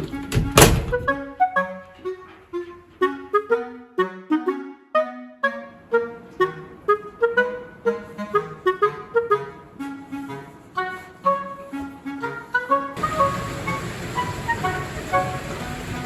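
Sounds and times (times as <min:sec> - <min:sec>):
light woodwind background music: 0:00.0 - 0:16.0.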